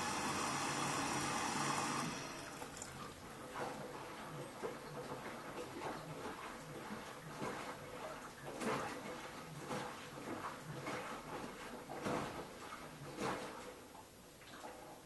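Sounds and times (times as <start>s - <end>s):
faint motor hum: 0.0s - 8.4s
water sloshing in washing machine drum: 0.0s - 15.0s.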